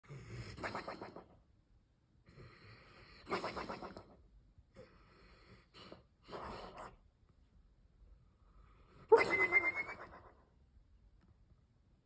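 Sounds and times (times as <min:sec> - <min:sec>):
dog whistling snores: 0:09.1 - 0:10.3.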